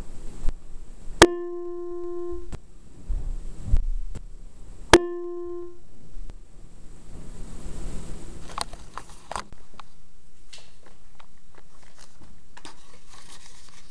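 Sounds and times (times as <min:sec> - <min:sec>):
electronic keyboard chime note: 0:01.2 - 0:02.5, 0:05.0 - 0:05.8.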